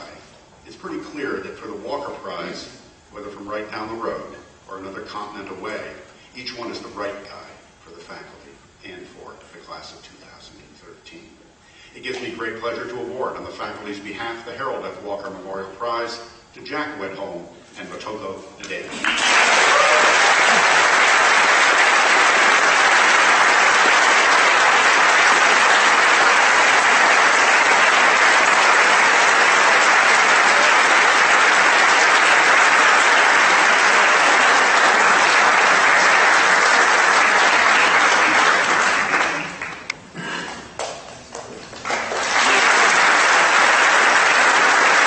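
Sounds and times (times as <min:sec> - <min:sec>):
audience applauding: 0:19.0 - 0:39.9, 0:40.8 - 0:45.0.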